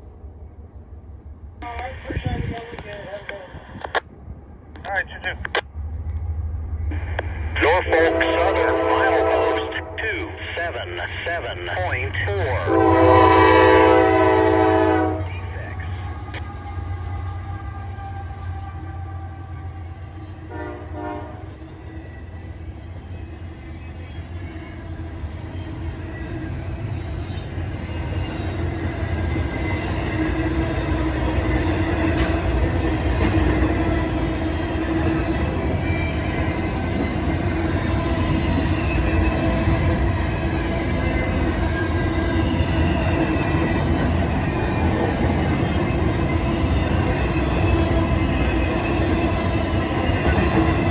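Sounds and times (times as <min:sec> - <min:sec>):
freight train rumbling: 0:00.0 - 0:50.9.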